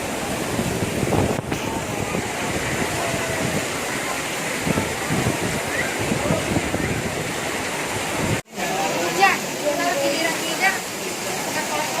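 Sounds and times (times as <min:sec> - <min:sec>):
wind buffeting microphone: 0:00.0 - 0:08.4
heavy rain pouring: 0:00.0 - 0:12.0.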